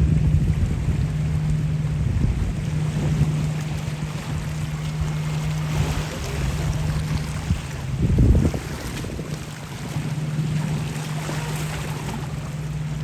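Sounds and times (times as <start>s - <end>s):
boat engine humming: 0.0s - 13.0s
wind rumble on microphone: 0.0s - 13.0s.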